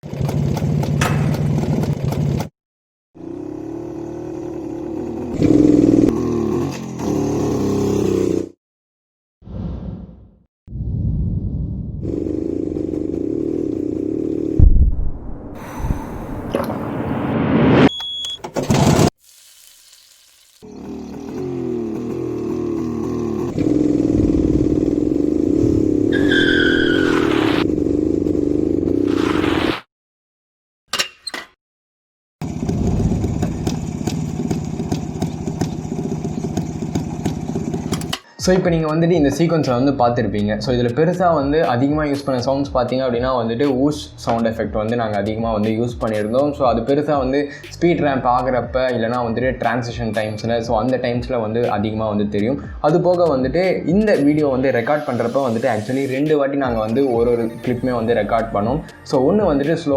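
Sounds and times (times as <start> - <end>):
motorcycle engine revving: 0.0 - 2.5, 3.2 - 8.6, 12.0 - 14.7, 20.6 - 29.6, 32.4 - 38.1.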